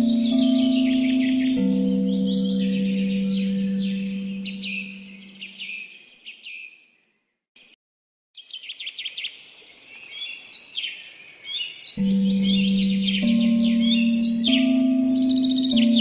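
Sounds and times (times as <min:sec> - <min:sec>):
low steady singing bowl tone: 0:00.0 - 0:05.4, 0:12.0 - 0:16.0
songbirds chirping and singing: 0:00.0 - 0:07.4, 0:08.4 - 0:16.0.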